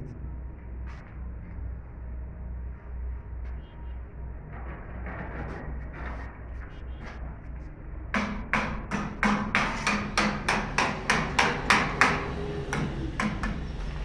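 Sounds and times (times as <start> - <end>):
hammer striking: 8.2 - 13.8.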